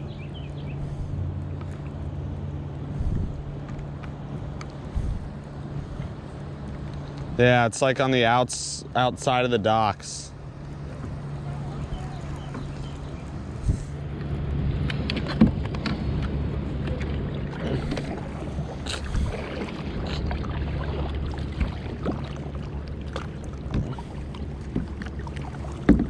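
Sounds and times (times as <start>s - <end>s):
boat motor humming: 0.0s - 26.0s
light knocks and clicks: 25.8s - 26.0s.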